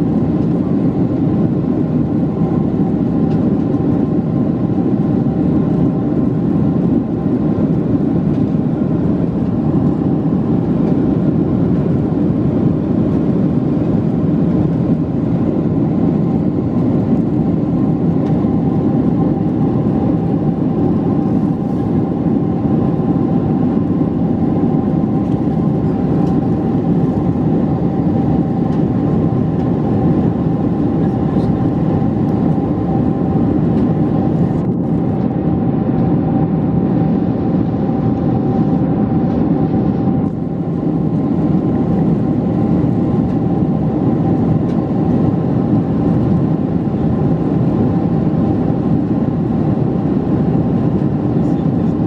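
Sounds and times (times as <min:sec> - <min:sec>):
aircraft cabin engine rush: 0:00.0 - 0:52.0.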